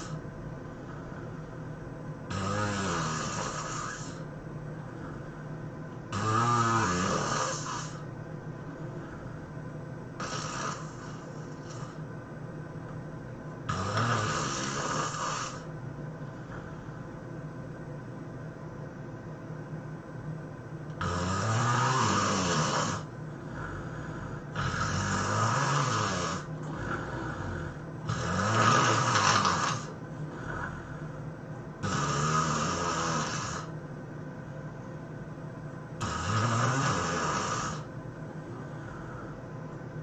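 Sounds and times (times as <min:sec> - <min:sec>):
person snoring loudly: 0:00.0 - 0:00.2, 0:02.3 - 0:04.3, 0:06.1 - 0:08.1, 0:10.2 - 0:12.0, 0:13.7 - 0:15.7, 0:21.0 - 0:31.1, 0:31.8 - 0:33.7, 0:36.0 - 0:37.9
quiet breathing: 0:00.0 - 0:18.0, 0:21.0 - 0:40.0.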